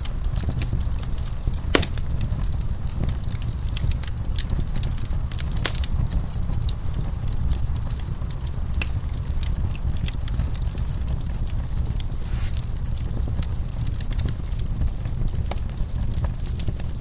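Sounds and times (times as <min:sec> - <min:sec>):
wood fire crackling and popping: 0:01.8 - 0:02.0.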